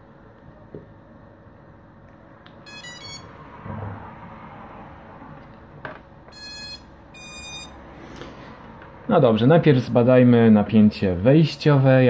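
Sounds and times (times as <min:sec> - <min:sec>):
short electronic beeps: 0:02.6 - 0:03.4, 0:06.3 - 0:07.8.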